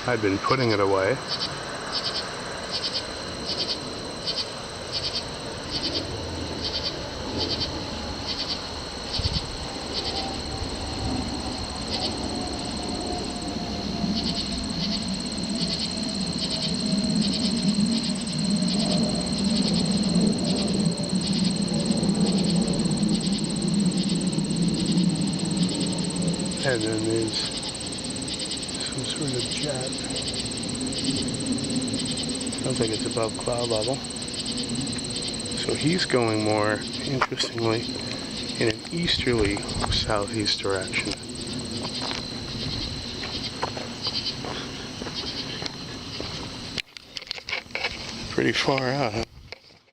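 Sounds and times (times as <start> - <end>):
distant jet engine drone: 0.0 - 49.9
night insects chirping: 0.0 - 49.9.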